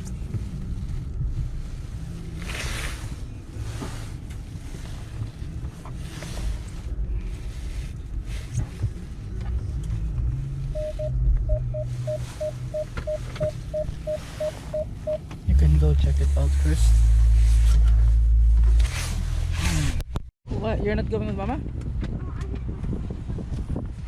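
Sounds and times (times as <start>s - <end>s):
vehicle rumble: 0.0s - 24.0s
short electronic beeps: 10.8s - 15.2s
wind noise and rustling on microphone: 17.3s - 24.0s.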